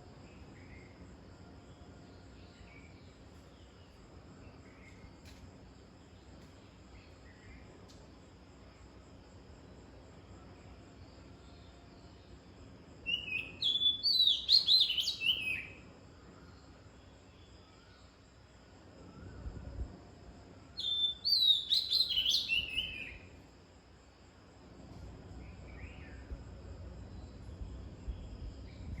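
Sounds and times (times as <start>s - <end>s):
songbird singing: 0.0s - 23.6s, 24.7s - 29.0s
insects chirring: 0.0s - 29.0s.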